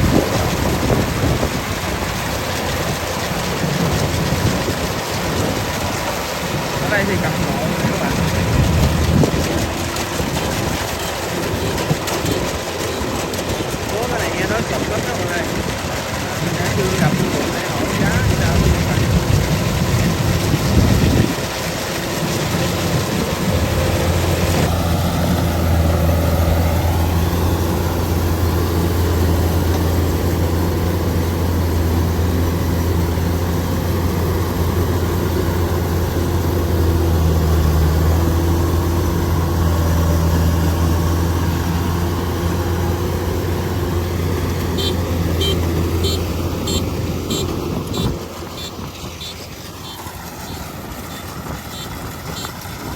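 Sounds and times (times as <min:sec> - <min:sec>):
combine harvester engine running: 0:00.0 - 0:52.9.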